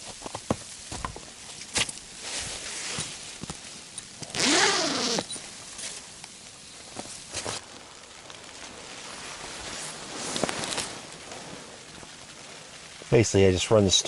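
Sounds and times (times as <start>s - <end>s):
gear clicks and rustles: 0.0s - 14.0s
zipper being pulled: 4.3s - 5.3s.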